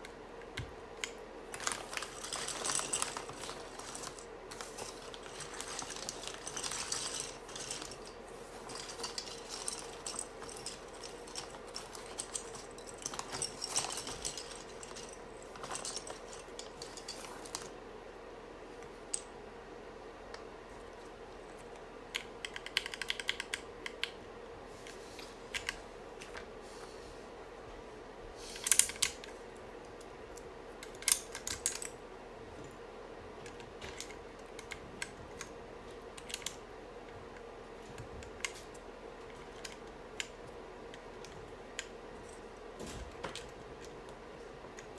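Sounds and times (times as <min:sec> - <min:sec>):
faint steady hum: 0:00.0 - 0:44.9
rustling handling noise: 0:00.4 - 0:17.9.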